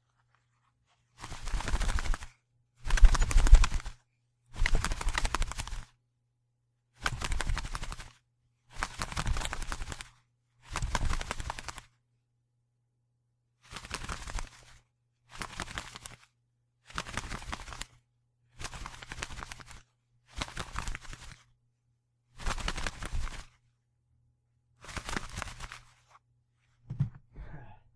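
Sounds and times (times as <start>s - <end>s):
bird wings flapping: 1.2s - 6.0s, 7.0s - 11.9s, 13.7s - 16.3s, 16.9s - 18.0s, 18.6s - 21.4s, 22.3s - 23.6s, 24.8s - 26.0s.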